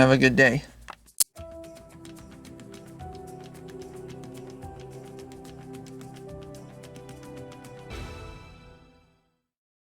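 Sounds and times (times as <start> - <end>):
music with steady beat: 0.7 - 9.0.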